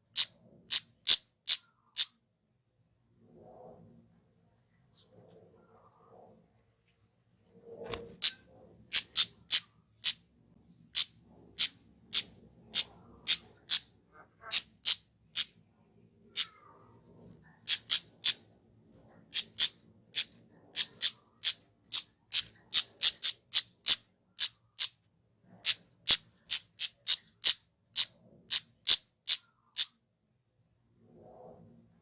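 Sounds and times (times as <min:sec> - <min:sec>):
bird high-pitched call notes: 0:09.0 - 0:10.2, 0:14.4 - 0:15.5, 0:17.7 - 0:18.4, 0:19.4 - 0:24.9, 0:25.7 - 0:29.9.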